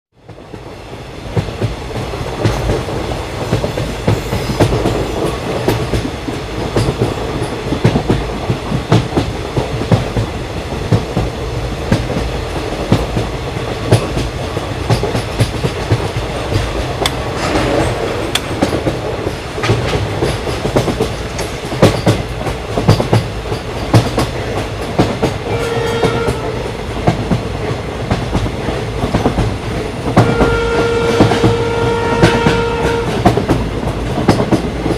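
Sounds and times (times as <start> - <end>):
train wheels rumbling: 0.2 - 34.9
wheels clacking over rail joints: 1.4 - 34.9
train horn: 25.4 - 26.8, 30.2 - 33.3.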